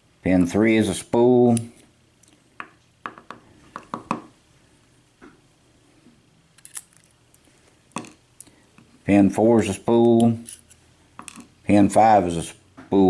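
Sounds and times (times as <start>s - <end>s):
metal lock parts clicking: 6.6s - 7.1s.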